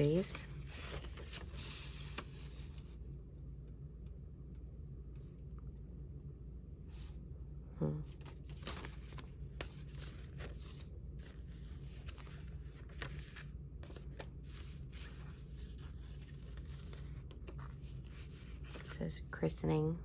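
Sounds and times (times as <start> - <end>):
paper rustling: 0.0 - 2.8, 8.2 - 19.0
steady low hum: 0.0 - 20.0.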